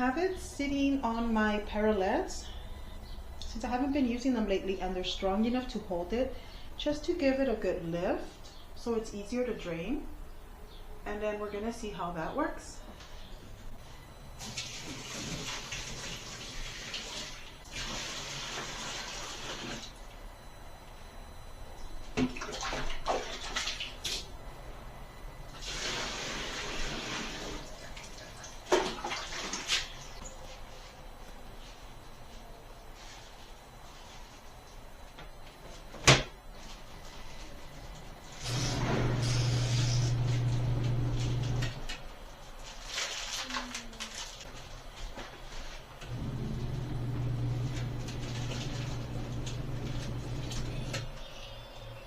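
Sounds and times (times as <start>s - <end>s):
washing machine motor humming: 11.2s - 42.6s, 43.7s - 52.0s
water running and splashing: 14.4s - 19.8s, 47.9s - 50.6s.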